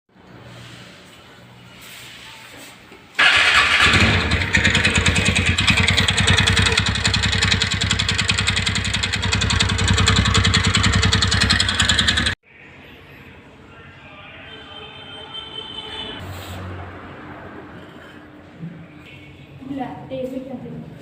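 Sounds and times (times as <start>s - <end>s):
engine ticking: 3.2s - 12.4s
scooter engine starting and running: 3.2s - 12.4s.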